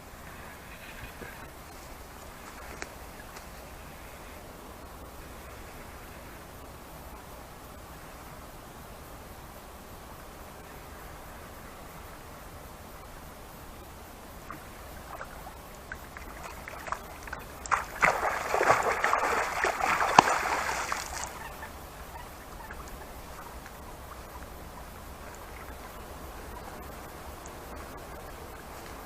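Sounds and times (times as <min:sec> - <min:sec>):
water splashing and sloshing: 0:14.4 - 0:29.0
sharp water slap: 0:16.4 - 0:21.3.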